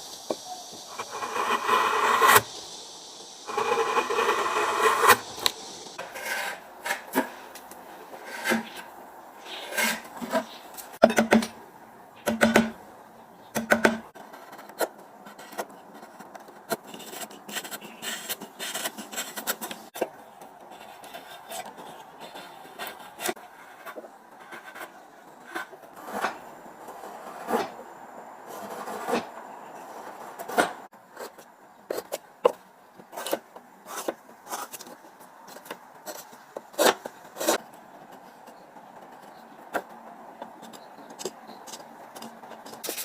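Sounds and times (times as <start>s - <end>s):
hand tool rasping on wood: 3.5s - 5.2s.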